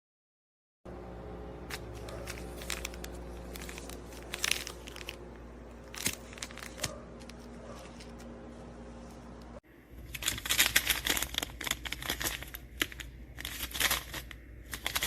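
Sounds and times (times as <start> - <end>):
steady low hum: 0.9 - 15.0
packaging crinkling: 1.7 - 8.3, 10.0 - 15.0.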